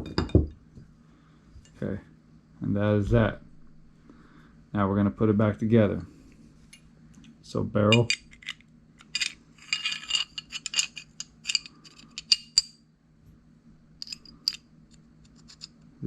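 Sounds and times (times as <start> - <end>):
steel gun parts clicking and clinking: 7.9 - 12.8, 14.0 - 15.8.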